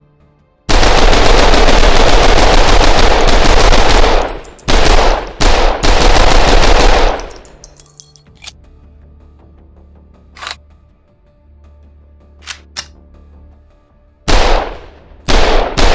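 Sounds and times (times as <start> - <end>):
submachine gun bursts: 0.7 - 7.6
gunfire echo: 0.7 - 7.7, 14.3 - 15.9.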